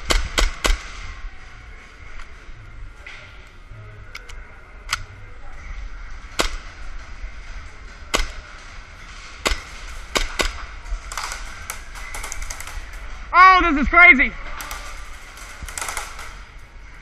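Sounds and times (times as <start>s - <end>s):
airsoft gun shots: 0.0s - 1.0s, 9.4s - 12.9s.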